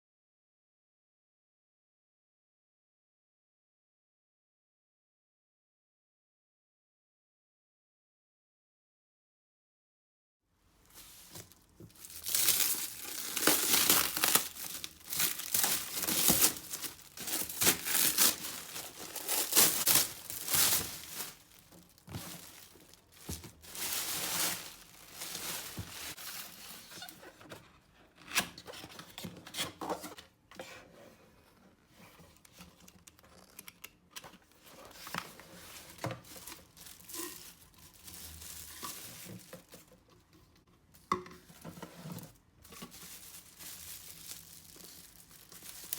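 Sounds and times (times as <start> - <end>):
packaging crinkled and torn: 11.0 - 27.2, 35.8 - 39.9, 42.8 - 45.9.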